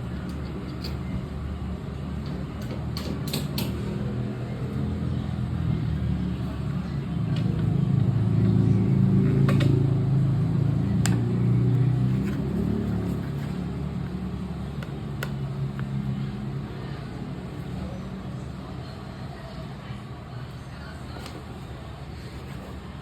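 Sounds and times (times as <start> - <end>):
vehicle engine running: 3.8 - 20.2.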